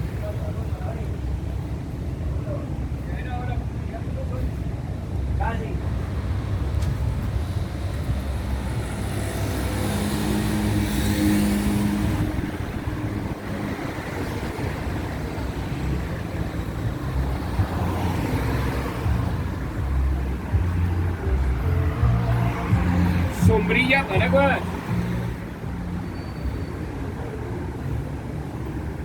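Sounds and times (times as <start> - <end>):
cars passing: 0.0 - 29.0
vehicle engine drone: 4.2 - 29.0.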